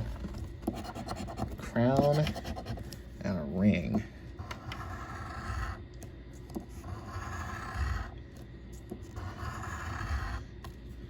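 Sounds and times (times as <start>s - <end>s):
scratching lottery ticket: 0.6s - 2.9s, 4.5s - 5.8s, 6.7s - 10.4s.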